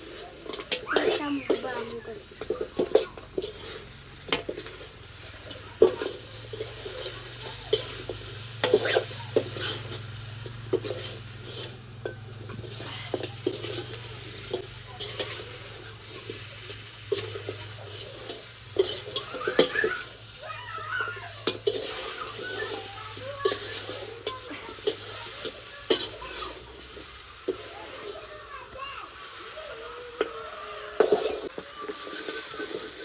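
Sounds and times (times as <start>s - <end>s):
spoon scraping metal pot: 5.5s - 20.2s, 21.1s - 26.4s.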